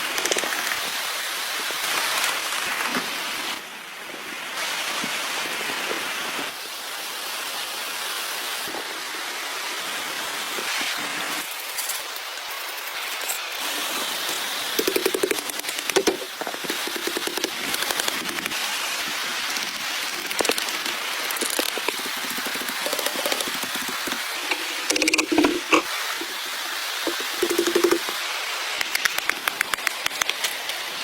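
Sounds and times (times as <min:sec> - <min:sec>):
quick crackling clicks: 0:14.3 - 0:28.2, 0:28.8 - 0:30.8
water rushing: 0:14.3 - 0:29.8.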